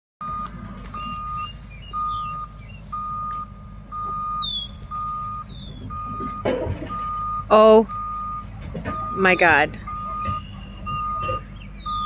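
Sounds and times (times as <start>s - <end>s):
diesel engine rumble: 0.2s - 12.0s
reversing alarm beeping: 0.2s - 12.0s
birds chirping faintly: 0.3s - 12.0s.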